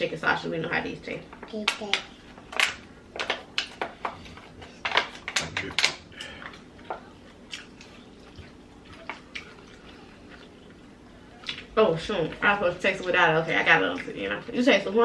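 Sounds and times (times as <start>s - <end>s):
wet eating smacks and clicks: 5.3s - 10.6s.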